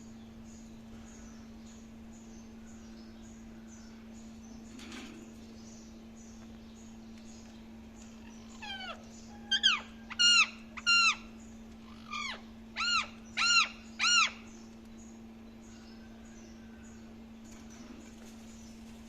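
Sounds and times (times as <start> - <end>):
steady low hum: 0.0 - 19.0
parakeet calling: 8.1 - 14.6.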